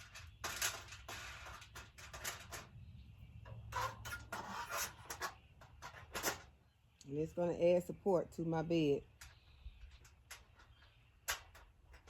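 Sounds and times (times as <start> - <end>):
metal hardware clicks and scrapes: 0.0 - 2.7, 3.4 - 6.6.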